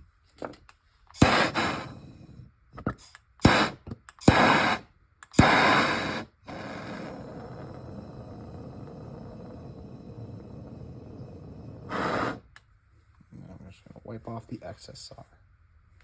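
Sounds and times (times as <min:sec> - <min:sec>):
gas torch igniter clicks: 0:00.7 - 0:02.1, 0:03.0 - 0:09.7
gas torch hissing: 0:01.1 - 0:12.6.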